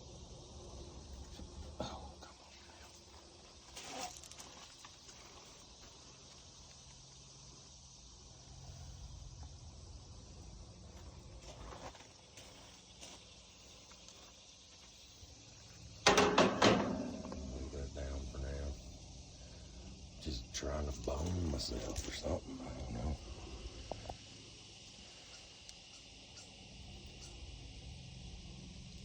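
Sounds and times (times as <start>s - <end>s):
insects chirring: 0.0s - 29.0s
sharp knocks and clatter: 16.0s - 17.5s.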